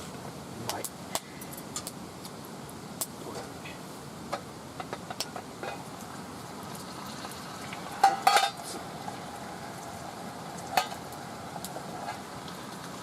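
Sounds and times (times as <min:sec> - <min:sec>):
steady hiss: 0:00.0 - 0:13.0
metal cookware clinking: 0:08.0 - 0:08.7.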